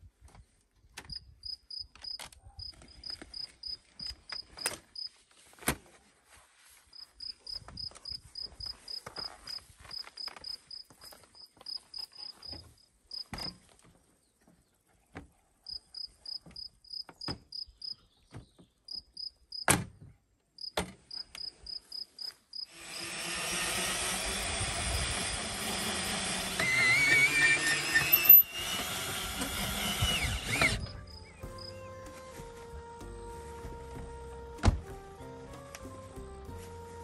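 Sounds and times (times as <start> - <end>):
crickets chirping: 20.6 - 22.7.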